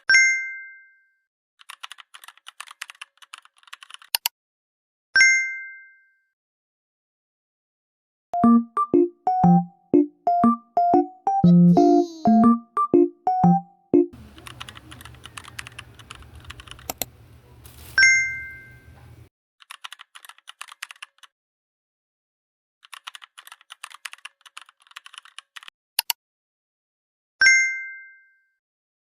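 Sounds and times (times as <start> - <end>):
keyboard typing: 1.6 - 4.3, 8.4 - 17.1, 19.6 - 21.3, 22.8 - 26.2
bell-like chime: 27.4 - 28.6.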